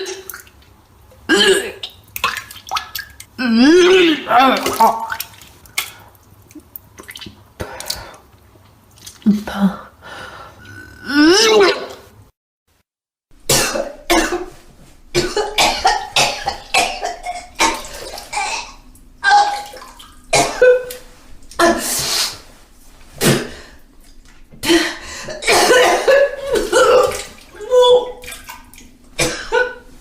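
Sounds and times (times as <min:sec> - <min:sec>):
liquid splashing: 0:01.8 - 0:03.4, 0:04.5 - 0:09.3, 0:15.3 - 0:24.6, 0:25.4 - 0:30.0
person vomiting: 0:03.4 - 0:05.2, 0:10.7 - 0:11.9, 0:15.2 - 0:21.0, 0:24.6 - 0:28.3.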